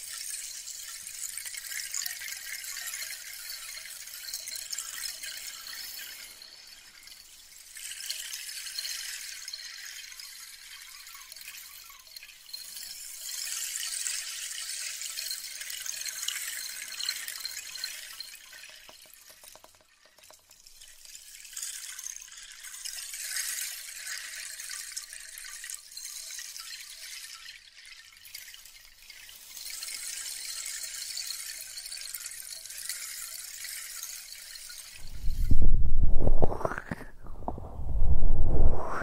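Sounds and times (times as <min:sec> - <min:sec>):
soft crackling hiss: 0:34.6 - 0:39.0.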